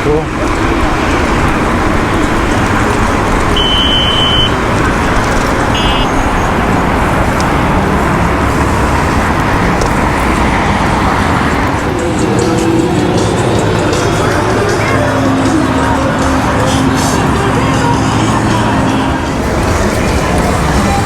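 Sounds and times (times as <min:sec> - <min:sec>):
wind noise: 0:00.0 - 0:13.6
skateboard rumble: 0:00.0 - 0:21.0
short high beeps: 0:03.6 - 0:04.5, 0:05.8 - 0:06.2.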